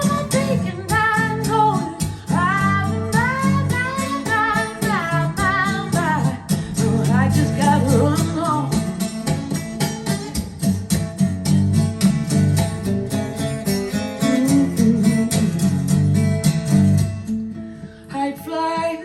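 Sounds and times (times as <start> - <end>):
acoustic guitar: 0.0 - 19.0
bass line: 2.4 - 9.0.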